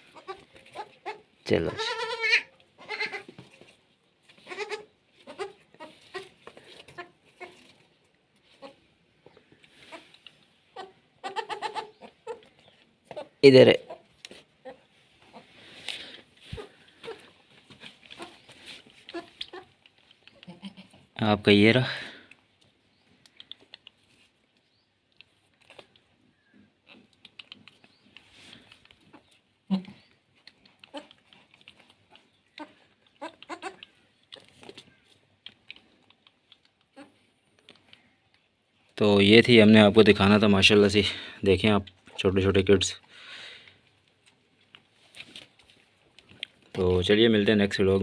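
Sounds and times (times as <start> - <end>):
goat kids bleating: 0.0 - 3.4, 4.4 - 7.6, 10.7 - 12.5, 19.0 - 21.1, 30.9 - 31.2, 32.5 - 34.0, 36.9 - 37.2
goat kids suckling clicks: 9.6 - 13.3, 16.6 - 21.2, 22.2 - 39.0, 41.8 - 42.2, 43.0 - 46.8.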